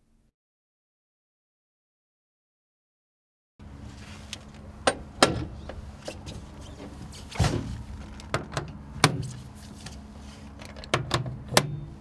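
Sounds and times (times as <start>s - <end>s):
low mechanical hum: 3.6s - 12.0s
metal clicks and clunks: 10.6s - 11.9s.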